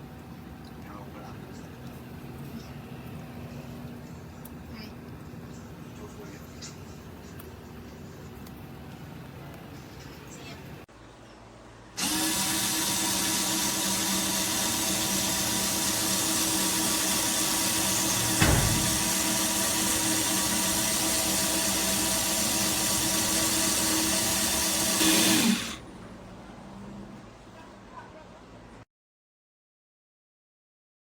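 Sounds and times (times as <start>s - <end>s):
electric screwdriver motor whine: 12.0s - 18.3s, 19.0s - 25.8s
short knock: 18.1s - 19.5s.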